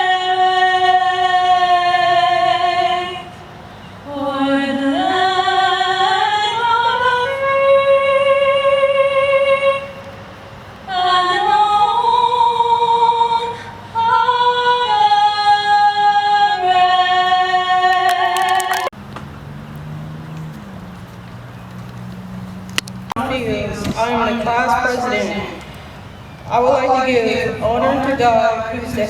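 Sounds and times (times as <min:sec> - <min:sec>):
woman singing unaccompanied: 0:00.0 - 0:10.1, 0:10.8 - 0:18.9, 0:26.5 - 0:29.0.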